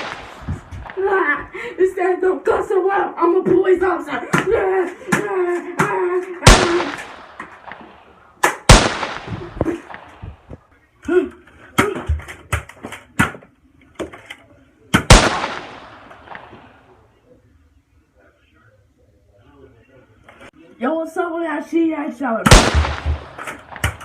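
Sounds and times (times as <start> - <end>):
gunshots with echoing tails: 0.0 - 1.4, 6.4 - 10.5, 15.0 - 16.8, 22.5 - 24.0.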